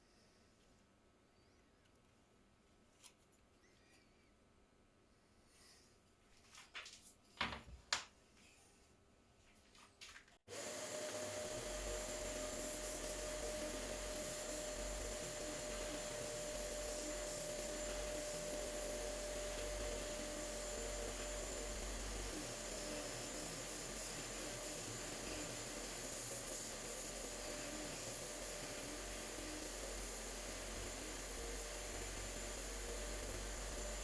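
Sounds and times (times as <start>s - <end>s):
spindle sander motor whining: 10.5s - 34.0s.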